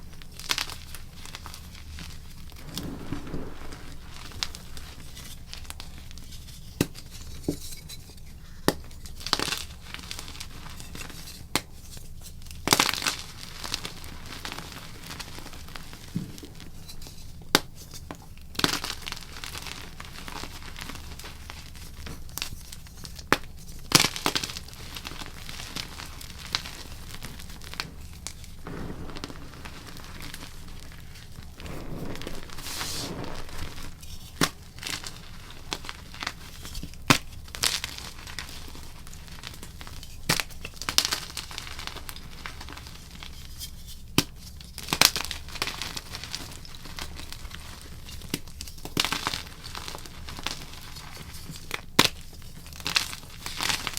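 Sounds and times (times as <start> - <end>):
chalk crunching and crumbling: 24.1 - 36.5.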